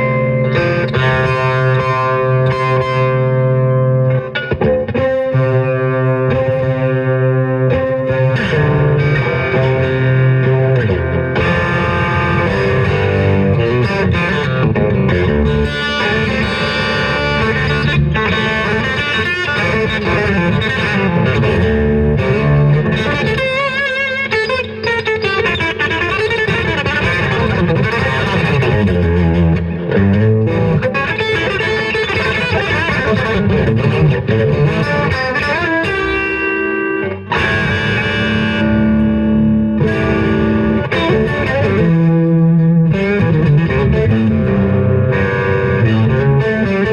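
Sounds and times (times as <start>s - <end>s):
distorted electric guitar: 0.0s - 46.9s.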